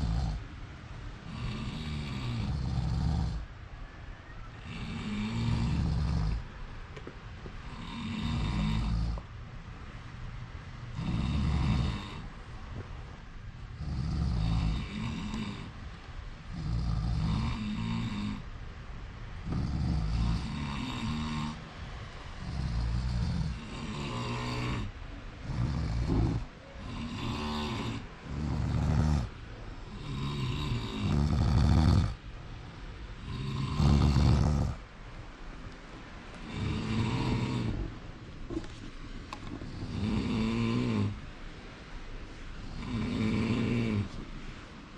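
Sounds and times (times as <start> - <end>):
person snoring: 0.0 - 0.4, 1.3 - 3.4, 4.6 - 6.4, 7.7 - 9.2, 11.0 - 12.3, 13.7 - 15.7, 16.5 - 18.4, 19.4 - 21.6, 22.4 - 29.3, 29.9 - 32.2, 33.2 - 34.8, 36.4 - 37.8, 39.7 - 41.2, 42.7 - 44.2.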